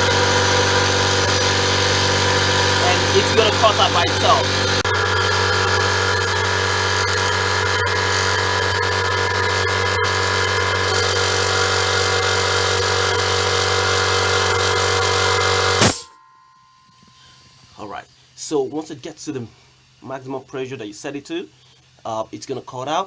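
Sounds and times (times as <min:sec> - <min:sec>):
air compressor running: 0:00.0 - 0:16.1.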